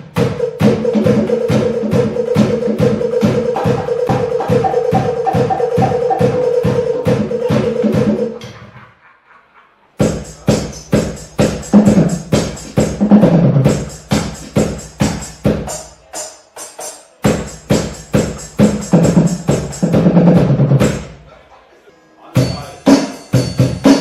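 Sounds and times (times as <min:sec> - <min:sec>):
electronic drum hits: 0:00.0 - 0:08.4, 0:10.0 - 0:15.9, 0:17.2 - 0:21.2, 0:22.4 - 0:24.0.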